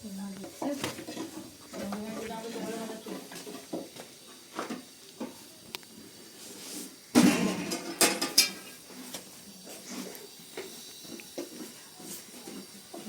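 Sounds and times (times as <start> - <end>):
clatter of objects: 0.4 - 5.4, 7.1 - 13.0
objects knocking and clicking: 0.4 - 5.9, 7.2 - 8.7.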